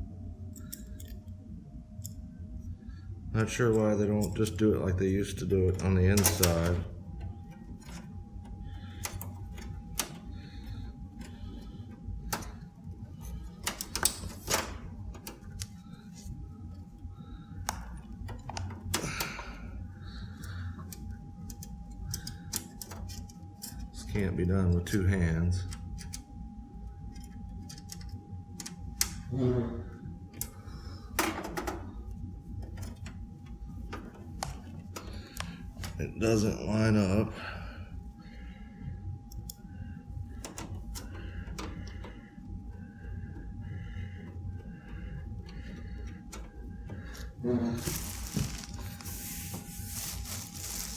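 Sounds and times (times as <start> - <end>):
faint steady hum: 0.0 - 50.9
metal parts clicking: 6.1 - 6.8.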